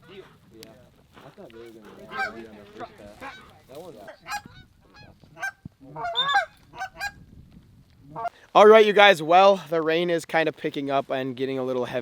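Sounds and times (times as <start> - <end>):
geese honking: 1.6 - 7.2.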